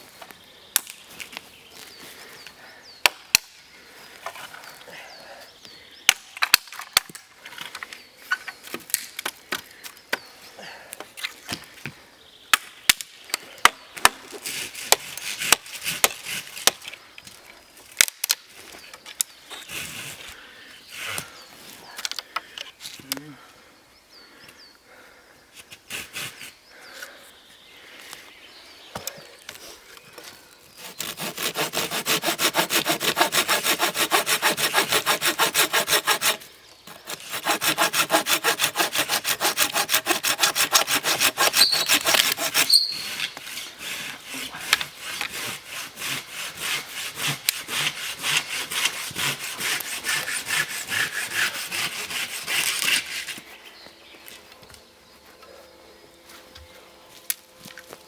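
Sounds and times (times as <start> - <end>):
hand saw cutting wood: 25.8 - 26.6, 30.8 - 53.5.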